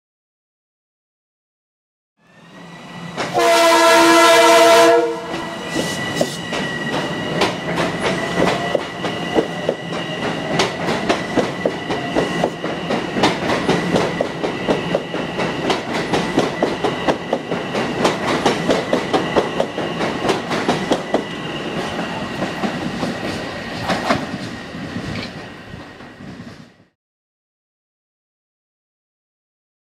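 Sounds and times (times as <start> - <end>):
train horn blast: 3.3 - 5.7
train wheels clicking over rail joints: 5.3 - 26.6.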